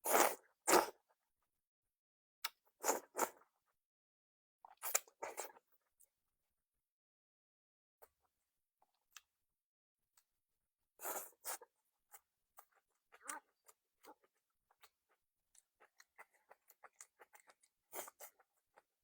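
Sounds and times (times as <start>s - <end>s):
chewing with wet mouth clicks: 12.6s - 18.9s.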